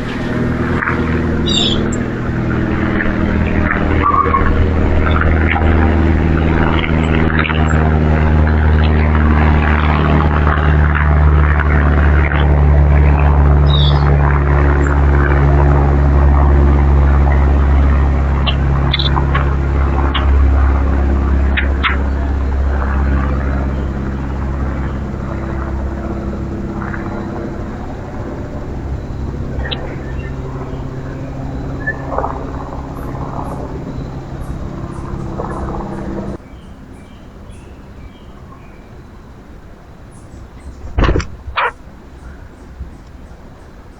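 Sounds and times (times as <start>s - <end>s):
engine humming: 0.0s - 43.9s
bird chirps: 0.9s - 2.1s, 13.6s - 14.1s, 40.1s - 43.9s.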